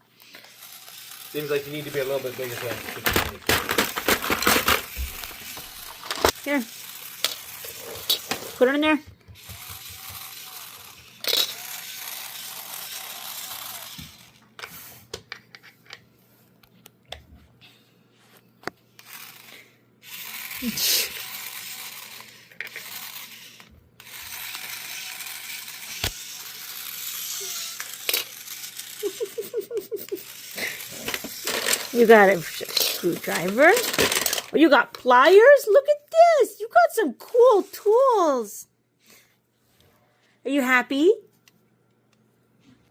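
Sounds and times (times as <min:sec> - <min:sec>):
plastic toys clicking and clattering: 0:00.2 - 0:16.0, 0:19.0 - 0:35.4
packaging rustling: 0:01.4 - 0:06.4, 0:30.5 - 0:34.6.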